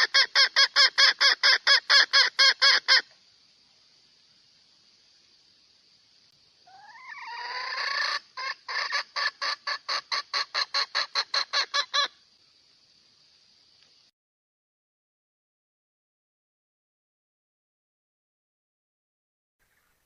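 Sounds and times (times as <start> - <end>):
hen calling: 0.0 - 3.1, 6.6 - 12.2
hen clucking: 0.0 - 3.1, 6.7 - 12.2.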